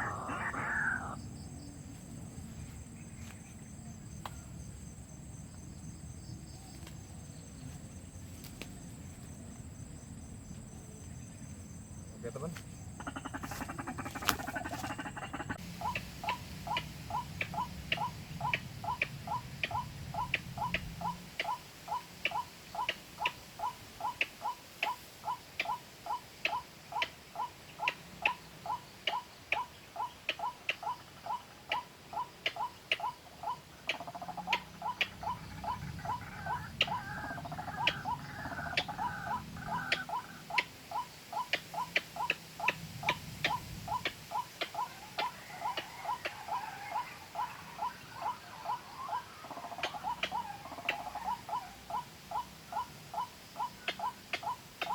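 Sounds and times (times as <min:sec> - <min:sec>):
bird call through phone speaker: 0:00.0 - 0:01.2
warbling bird call: 0:00.0 - 0:01.2, 0:28.3 - 0:54.9.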